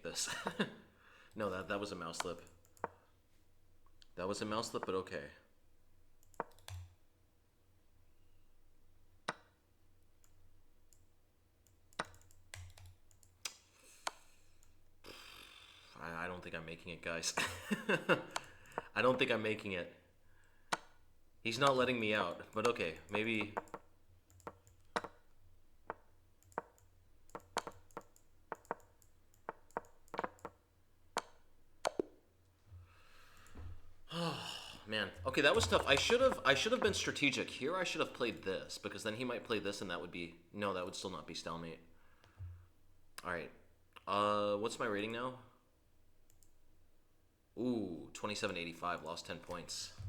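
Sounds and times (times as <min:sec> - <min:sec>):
mouse clicks: 0:06.2 - 0:06.9, 0:10.2 - 0:15.5, 0:20.7 - 0:21.0, 0:22.4 - 0:32.2.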